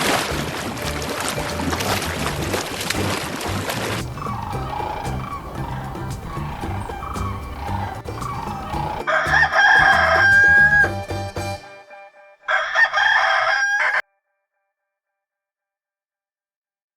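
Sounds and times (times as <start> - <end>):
background music with steady beat: 0.0 - 13.0
rooster crowing: 4.3 - 10.9, 12.5 - 14.0.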